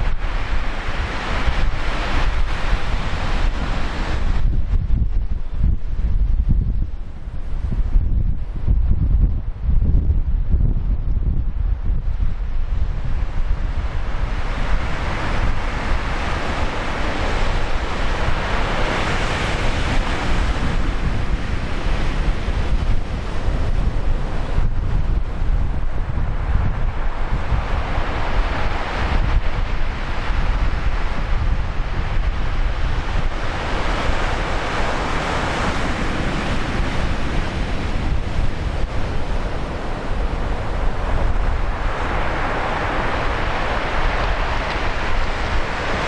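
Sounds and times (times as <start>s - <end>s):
surf breaking on shore: 0.0s - 4.5s, 13.7s - 46.0s
wind buffeting microphone: 0.0s - 46.0s.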